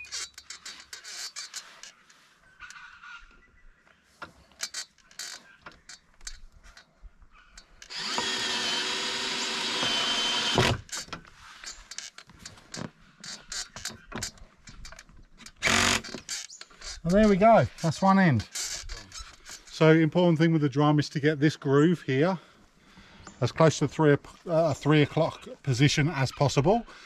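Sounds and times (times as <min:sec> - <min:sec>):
power drill running: 0:07.8 - 0:10.9, 0:15.6 - 0:16.1.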